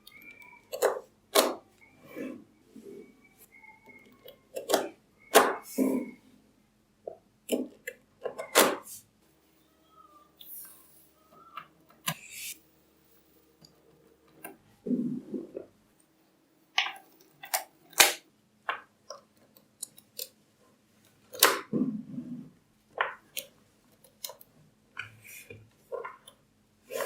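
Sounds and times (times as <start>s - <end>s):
magnetic balls snapping together: 16.8s - 20.4s
rattle of balls shifting: 18.6s - 27.0s.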